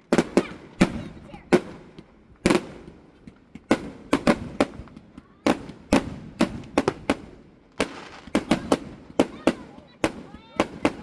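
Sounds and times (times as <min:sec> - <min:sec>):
fireworks bangs with echo: 0:00.0 - 0:11.0.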